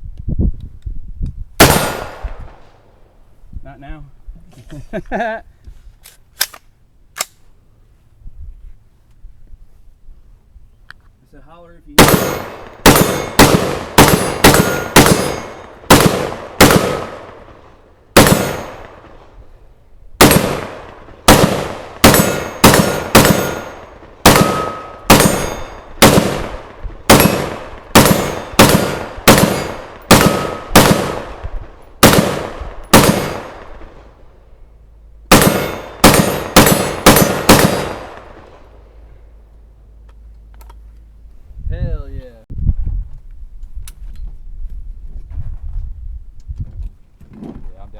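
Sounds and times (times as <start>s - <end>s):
gunshots with echo: 1.6s - 2.4s, 12.0s - 17.6s, 18.2s - 19.2s, 20.2s - 34.0s, 35.3s - 38.6s.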